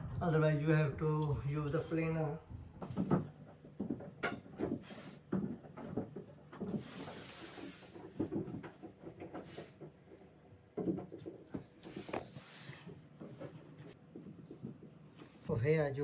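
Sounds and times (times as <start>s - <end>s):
hissing scrape of door: 4.2s - 5.3s, 6.7s - 8.2s, 9.4s - 9.8s, 11.8s - 14.0s.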